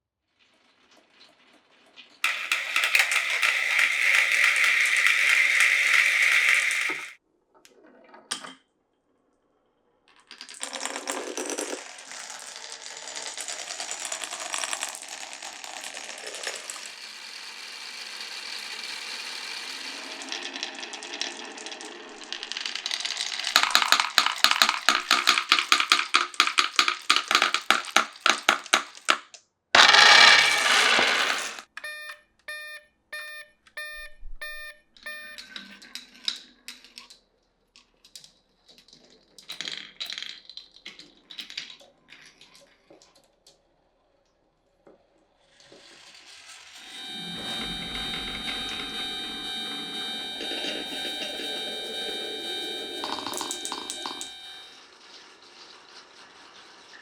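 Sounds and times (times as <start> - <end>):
fast clatter of clicks: 2.2 - 7.2, 22.6 - 29.9
marbles rolling through wooden run: 2.2 - 7.2, 10.2 - 31.7, 51.1 - 57.0.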